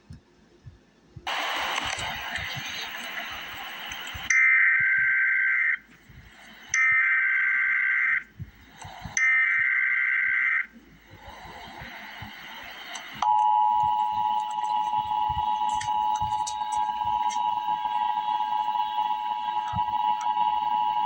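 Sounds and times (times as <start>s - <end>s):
two-pitch digital data tone bursts: 9.0s - 21.0s
two-tone attention signal: 13.2s - 21.0s.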